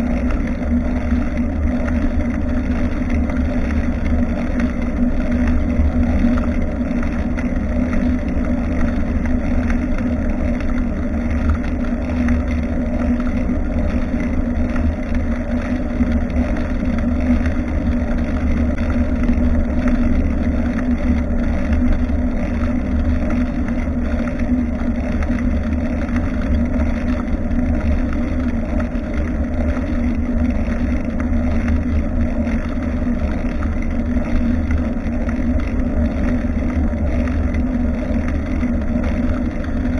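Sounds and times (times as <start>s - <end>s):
bicycle road noise: 0.0s - 39.9s.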